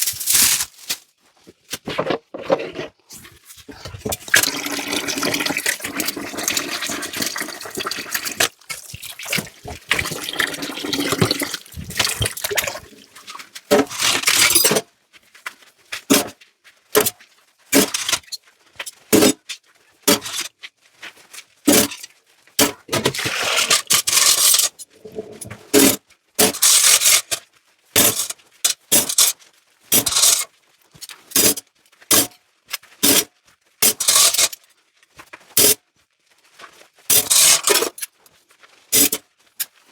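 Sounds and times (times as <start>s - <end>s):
dishes being handled and rinsed: 1.4s - 14.8s, 22.6s - 26.9s
tap water running into sink: 3.8s - 13.9s.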